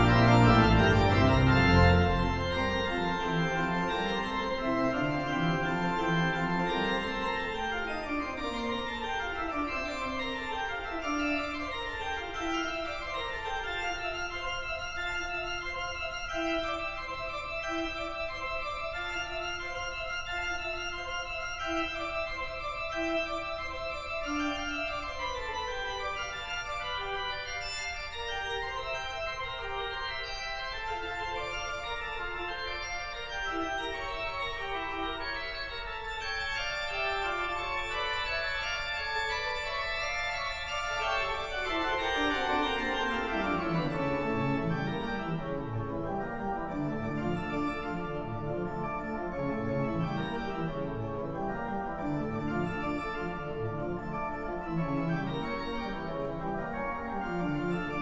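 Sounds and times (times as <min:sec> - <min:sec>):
organ or synth held chords: 0:00.0 - 0:20.4, 0:39.6 - 0:58.0.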